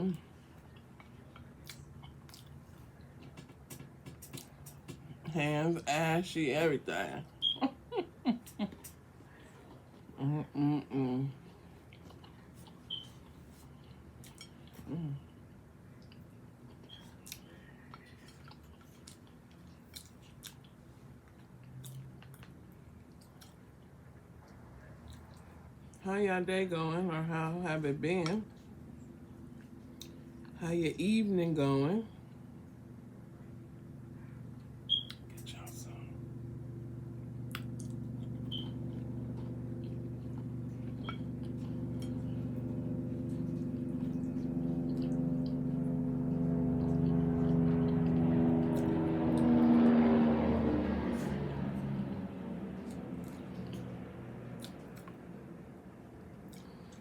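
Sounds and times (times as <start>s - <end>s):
mouth clicks and smacks: 0.7s - 5.0s
chewing close to microphone: 16.0s - 26.0s, 37.5s - 45.7s, 52.7s - 55.3s
low hum: 27.0s - 57.0s.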